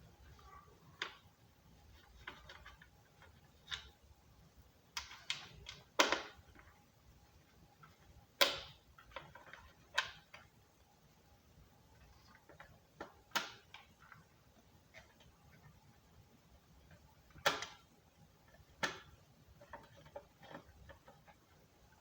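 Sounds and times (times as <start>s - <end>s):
plastic clicks and taps: 7.9s - 10.5s, 12.3s - 14.3s, 16.9s - 21.5s.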